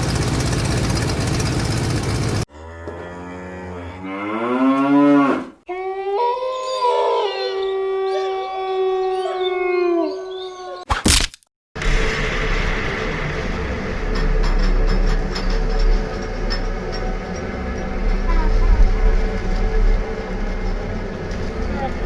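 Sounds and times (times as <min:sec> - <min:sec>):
sharp click: 0:10.9 - 0:12.2
steady rumbling noise: 0:11.8 - 0:22.0.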